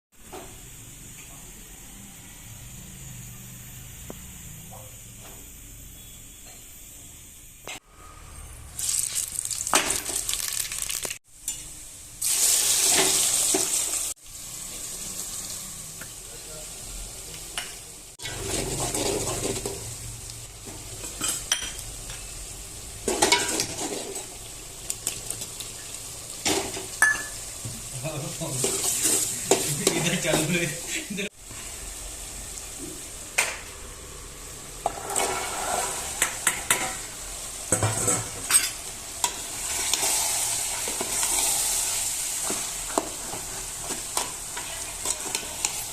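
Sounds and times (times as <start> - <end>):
food sizzling in oil: 5.6 - 45.9
spatula scraping a pan: 28.5 - 30.5, 34.8 - 37.1, 37.7 - 45.9.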